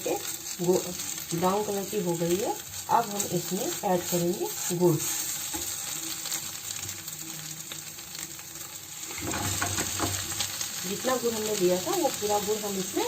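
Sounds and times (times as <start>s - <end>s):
paste sizzling in a pan: 0.0s - 13.0s
spoon scraping a pan: 4.2s - 6.5s, 9.0s - 10.5s.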